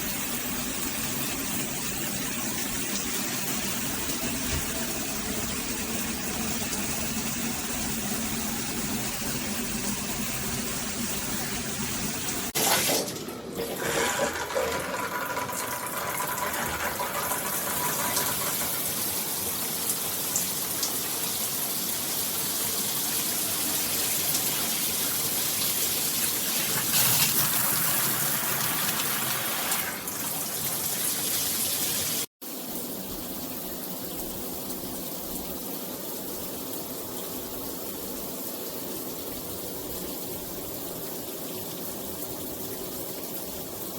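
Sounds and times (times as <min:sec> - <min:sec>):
water spraying from shower head: 0:13.8 - 0:20.9.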